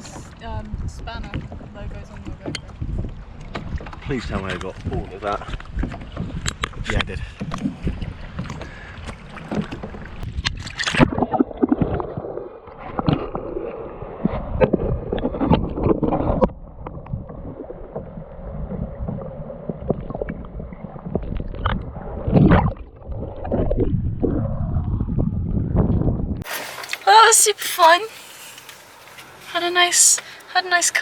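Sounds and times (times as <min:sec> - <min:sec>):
kayak paddles splashing: 0:00.0 - 0:23.8, 0:26.4 - 0:31.0
water sloshing: 0:00.0 - 0:24.5, 0:26.4 - 0:31.0
low rumble: 0:09.6 - 0:26.5.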